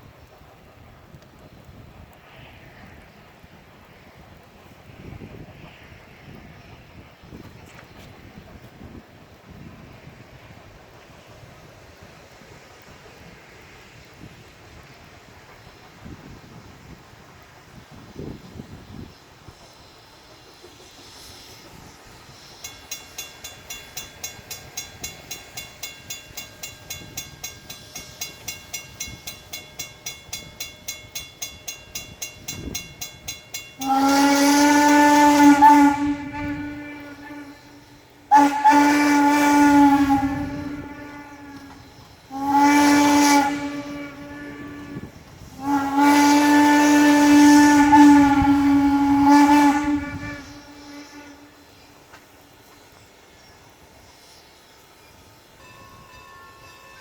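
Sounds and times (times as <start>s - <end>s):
steam locomotive whistle: 17.9s - 57.0s
bell ringing steadily: 22.6s - 34.0s, 55.0s - 57.0s.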